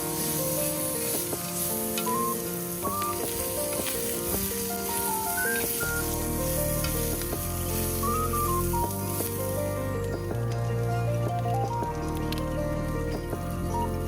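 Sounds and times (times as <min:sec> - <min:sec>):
food sizzling in a pan: 0:00.0 - 0:10.1
background music: 0:00.0 - 0:14.0.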